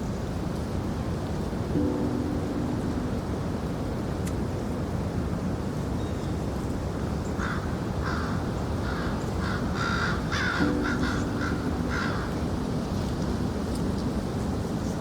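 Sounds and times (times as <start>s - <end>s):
crows cawing: 7.4s - 12.4s.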